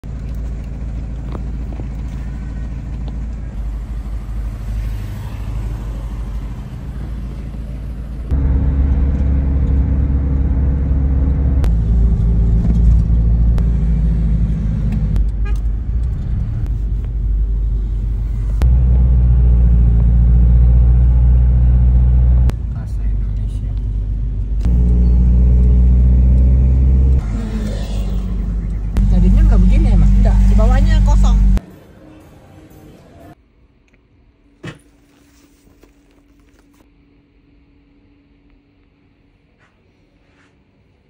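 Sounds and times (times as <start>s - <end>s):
motor vehicle rumbling: 0.0s - 31.6s.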